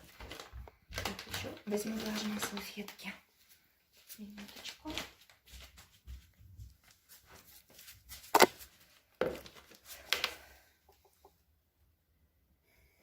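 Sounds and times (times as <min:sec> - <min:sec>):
packet rustling: 0:00.0 - 0:02.8, 0:08.2 - 0:08.9
sharp plastic crackle: 0:08.3 - 0:08.6.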